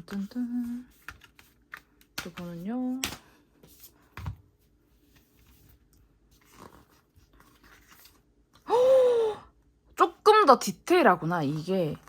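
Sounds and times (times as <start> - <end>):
paper rustling: 5.0 - 8.3.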